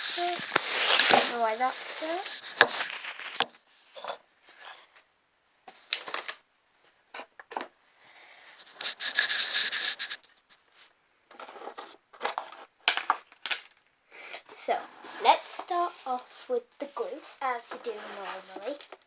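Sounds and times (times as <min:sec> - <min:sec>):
objects scraping and knocking on table: 0:00.0 - 0:04.8.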